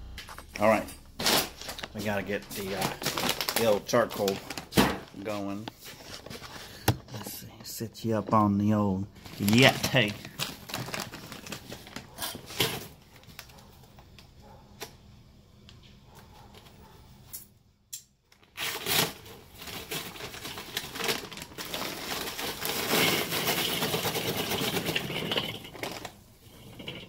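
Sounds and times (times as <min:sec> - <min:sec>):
charcoal briquettes clattering: 0:00.0 - 0:08.2, 0:09.1 - 0:14.2, 0:18.5 - 0:27.0
paper bag rustling: 0:00.3 - 0:07.4, 0:09.1 - 0:13.7, 0:18.4 - 0:27.0.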